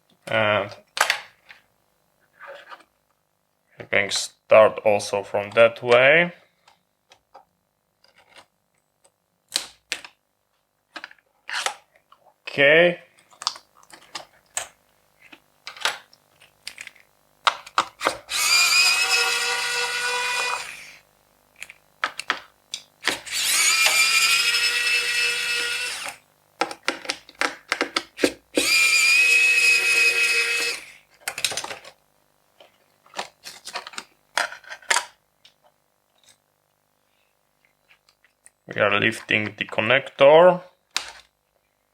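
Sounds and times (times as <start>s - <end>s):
electric screwdriver whining: 18.0s - 21.0s, 23.0s - 26.2s, 28.5s - 31.0s.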